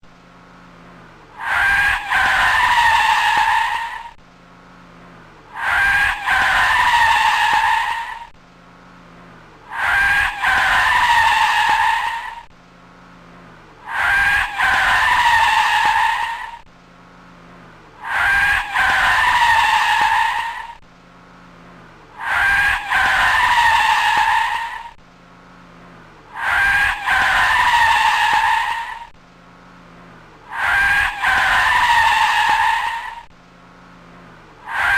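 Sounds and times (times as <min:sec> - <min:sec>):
engine idling low hum: 0:00.0 - 0:01.4, 0:04.0 - 0:05.6, 0:08.2 - 0:09.7, 0:12.4 - 0:13.9, 0:16.6 - 0:18.0, 0:20.7 - 0:22.2, 0:24.9 - 0:26.4, 0:29.0 - 0:30.5, 0:33.2 - 0:34.7.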